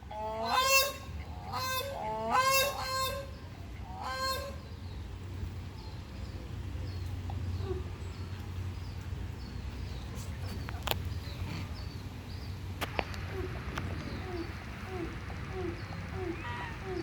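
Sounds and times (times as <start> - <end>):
crane calling: 13.1 - 17.0.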